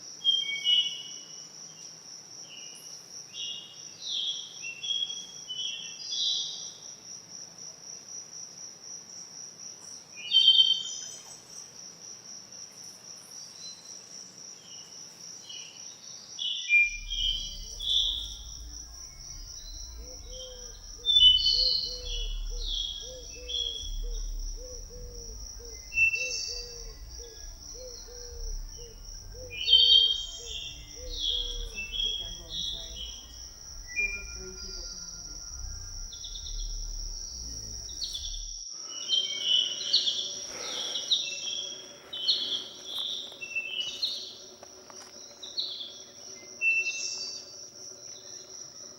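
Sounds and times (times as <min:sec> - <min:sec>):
insect trill: 0:00.0 - 0:48.9
low repeated chirp: 0:16.8 - 0:44.6
birds chirping: 0:16.8 - 0:47.6
low rumble: 0:16.9 - 0:38.7.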